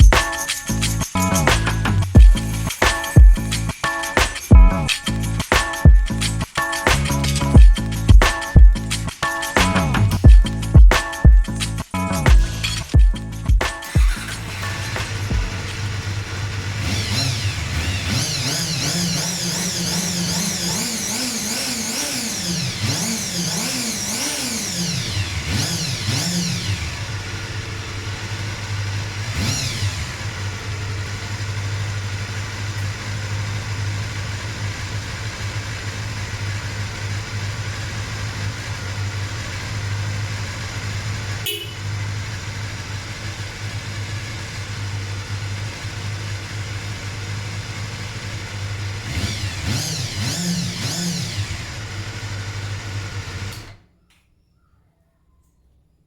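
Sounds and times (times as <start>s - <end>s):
sharp click: 0.0s - 2.1s, 2.7s - 3.2s, 3.8s - 11.6s
motorcycle engine revving and idling: 0.0s - 53.8s.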